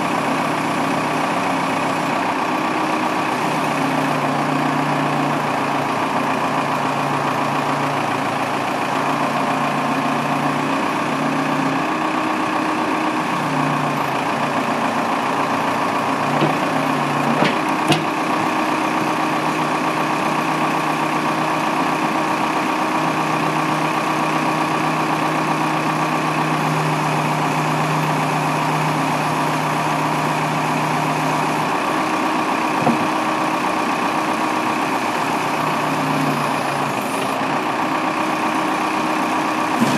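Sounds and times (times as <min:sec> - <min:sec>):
backhoe diesel engine idling: 0:00.0 - 0:39.9
short knocks: 0:17.3 - 0:18.2.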